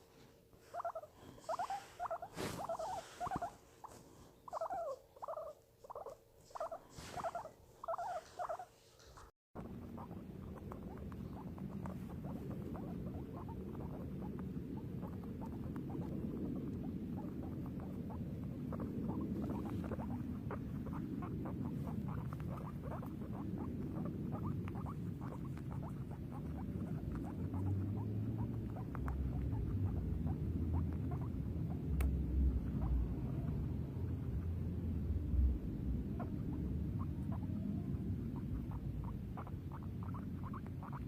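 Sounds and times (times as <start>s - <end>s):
guinea pig squeaking: 0.6s - 41.0s
low background rumble: 9.2s - 41.0s
low hum: 9.6s - 41.0s.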